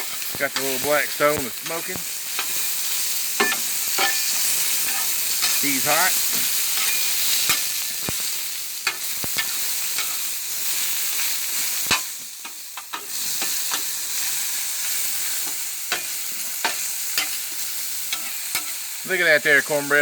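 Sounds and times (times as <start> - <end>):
vegetables sizzling on a griddle: 0.0 - 20.0
metal spatula scraping steel: 3.4 - 7.7, 14.8 - 18.9.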